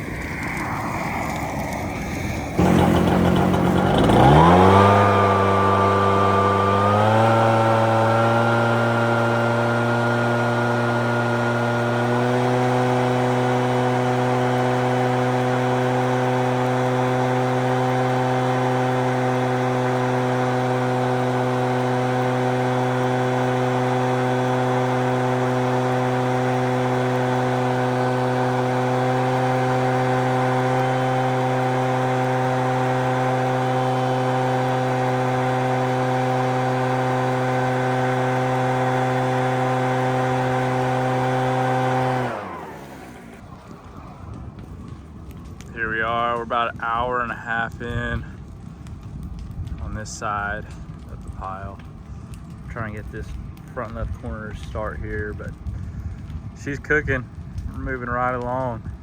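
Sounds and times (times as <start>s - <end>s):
engine starting and revving: 0.0s - 45.4s.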